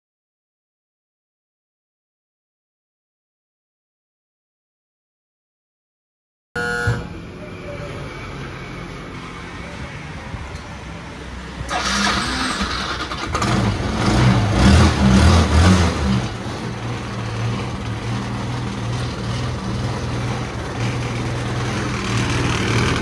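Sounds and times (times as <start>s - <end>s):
scooter engine starting and idling: 11.6s - 15.1s, 16.3s - 23.0s.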